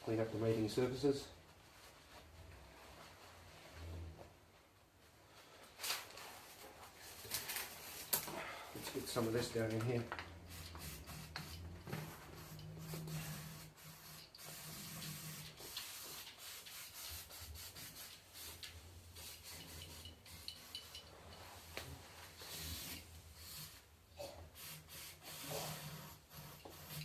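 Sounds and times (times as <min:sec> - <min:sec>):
hands rubbing sealant: 0:09.2 - 0:23.9.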